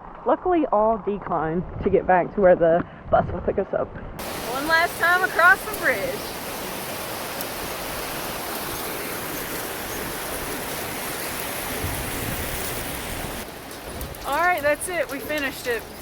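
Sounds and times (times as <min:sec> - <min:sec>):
stream water rushing: 0:04.2 - 0:16.0.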